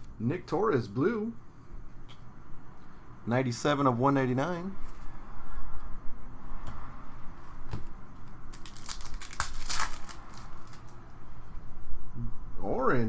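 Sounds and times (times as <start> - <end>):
trading cards rustling: 8.4 - 11.0
sharp crackles and clicks: 8.5 - 11.0.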